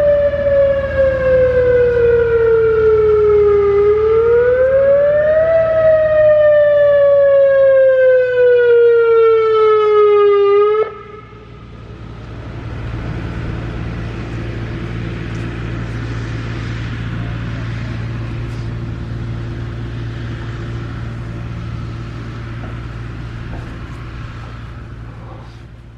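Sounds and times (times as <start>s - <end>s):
vehicle engine running: 11.3s - 25.9s.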